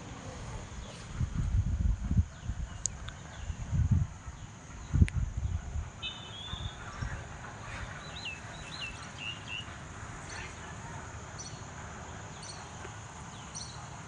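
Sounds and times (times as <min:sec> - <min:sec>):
small birds chirping: 0:04.3 - 0:13.9.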